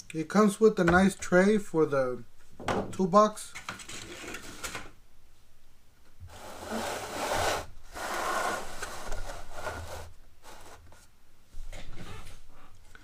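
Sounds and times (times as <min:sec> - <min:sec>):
plastic tray rubbing and scraping: 0:06.3 - 0:11.1.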